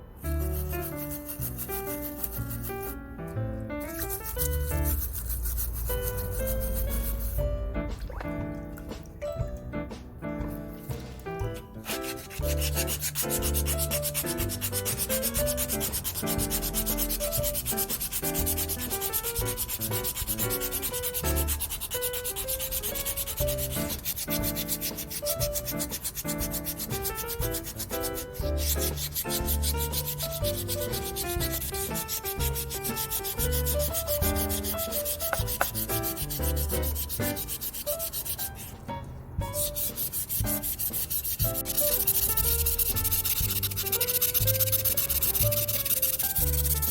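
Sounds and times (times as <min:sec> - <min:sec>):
hand sanding rusty metal: 0:00.2 - 0:03.0, 0:03.7 - 0:07.4, 0:10.4 - 0:38.8, 0:39.4 - 0:46.9
background music with bass: 0:03.3 - 0:21.7.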